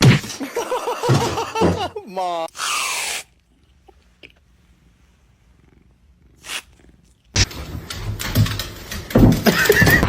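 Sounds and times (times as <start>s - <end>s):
cat purring: 5.2s - 7.4s.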